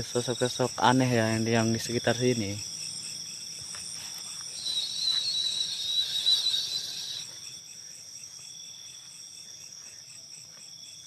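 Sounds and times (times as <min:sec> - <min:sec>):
insect chorus chirring: 0:00.0 - 0:11.0
insect trilling shrilly: 0:03.5 - 0:07.7.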